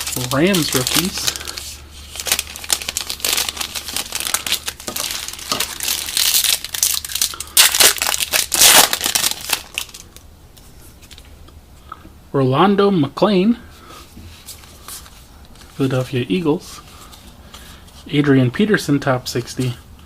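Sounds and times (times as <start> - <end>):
wrapper crinkling and tearing: 0.0 - 10.2.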